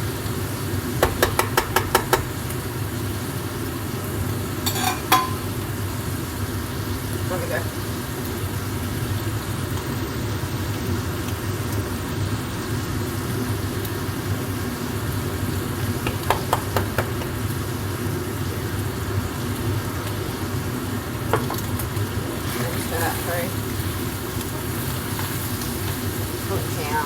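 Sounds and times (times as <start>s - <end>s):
mince sizzling in a frying pan: 0.0s - 27.0s.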